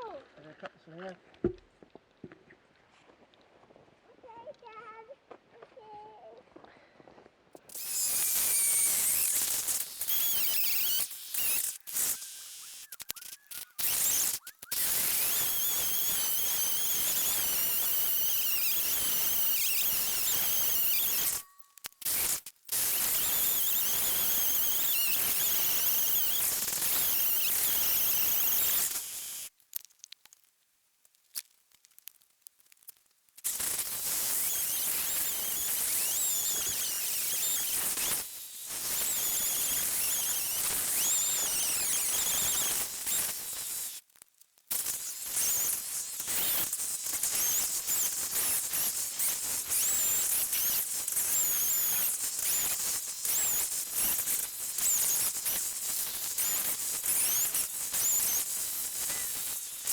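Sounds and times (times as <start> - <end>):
chainsaw cutting at high revs: 7.6 - 29.5, 33.5 - 44.0, 44.7 - 59.9.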